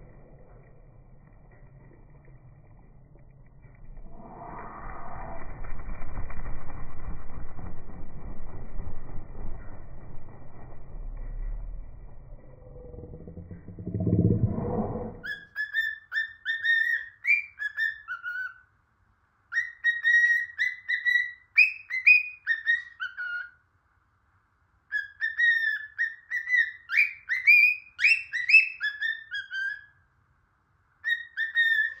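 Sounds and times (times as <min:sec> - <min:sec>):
pet bird whistling: 0:31.0 - 0:32.0.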